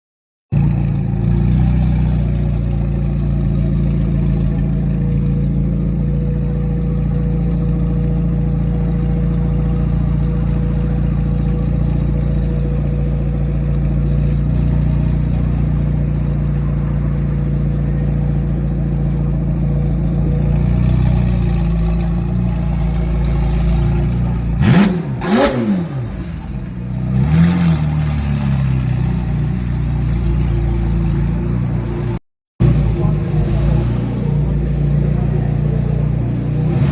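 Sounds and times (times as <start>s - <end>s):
car engine idling: 0.5s - 36.9s
engine revving blips: 24.5s - 28.8s.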